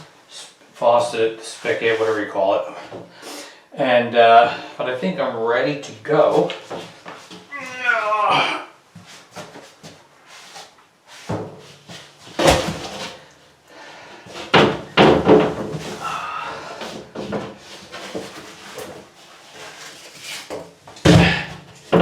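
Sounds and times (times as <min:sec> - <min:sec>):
board knocking and thumping: 0:12.4 - 0:13.1, 0:14.4 - 0:16.0, 0:21.0 - 0:22.0.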